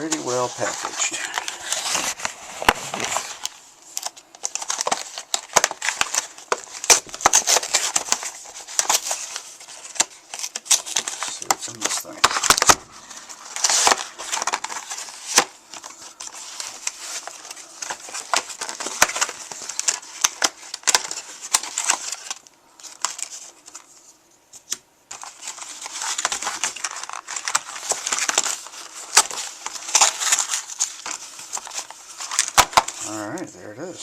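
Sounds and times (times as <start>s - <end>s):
packaging crinkling and rustling: 0.0s - 33.9s.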